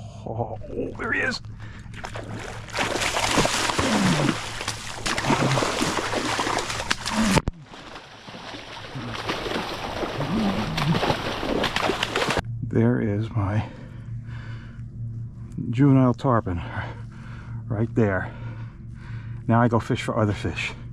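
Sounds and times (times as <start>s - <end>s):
fish thrashing and splashing: 1.9s - 12.4s.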